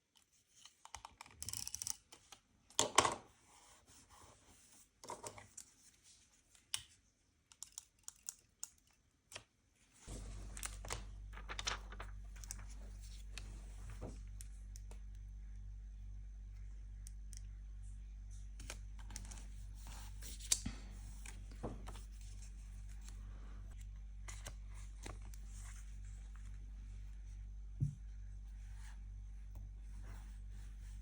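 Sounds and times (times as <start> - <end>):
paper rustling: 10.0 - 14.2
steady low hum: 10.0 - 31.0.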